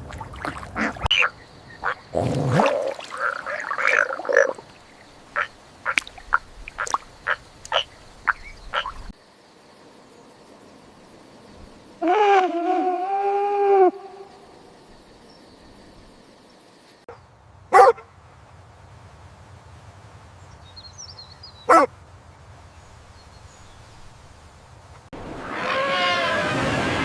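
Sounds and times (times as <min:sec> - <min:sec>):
animal calls: 0:21.7 - 0:21.9, 0:25.4 - 0:27.0.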